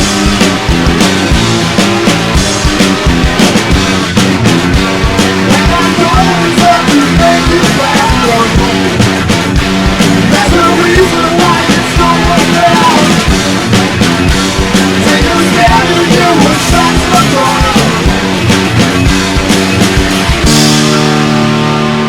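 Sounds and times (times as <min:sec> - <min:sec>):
rock band playing: 0:00.0 - 0:22.0
person singing: 0:05.4 - 0:09.1, 0:10.2 - 0:13.5, 0:14.9 - 0:18.4.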